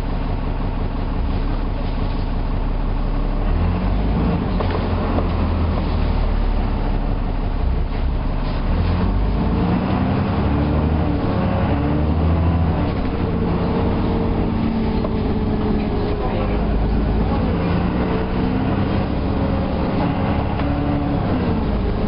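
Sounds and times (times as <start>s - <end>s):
bus engine droning: 0.0s - 22.0s.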